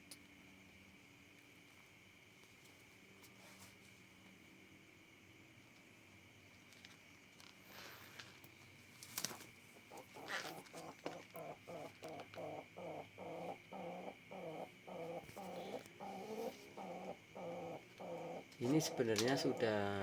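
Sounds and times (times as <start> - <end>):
pigeon cooing: 9.9 - 20.0.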